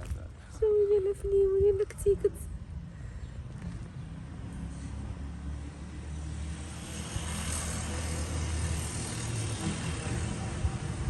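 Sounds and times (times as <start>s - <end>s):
vehicle engine hum: 0.0s - 11.0s
rushing noise of passing vehicle: 2.7s - 11.0s.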